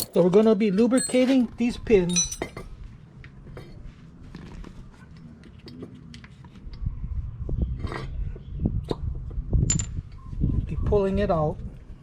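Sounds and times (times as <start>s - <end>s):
sharp metallic clink: 0.0s - 0.2s, 2.1s - 2.6s.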